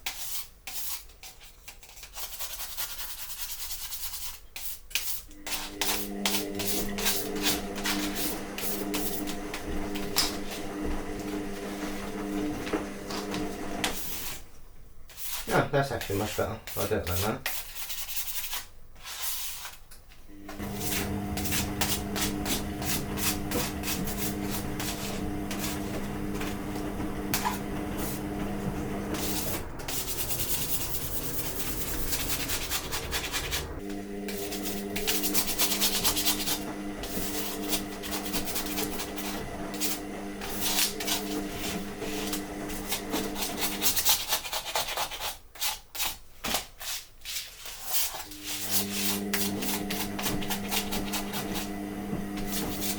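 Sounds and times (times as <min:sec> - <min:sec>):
steady hum: 0:20.3 - 0:43.8
scraper rasping on metal sheet: 0:20.5 - 0:46.1, 0:47.6 - 0:51.8, 0:52.4 - 0:52.9.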